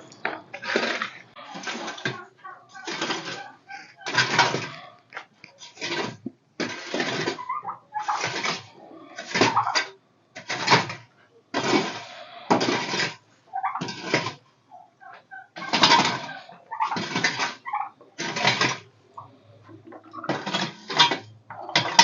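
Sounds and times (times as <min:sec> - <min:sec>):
scraping strokes: 0:00.0 - 0:14.4.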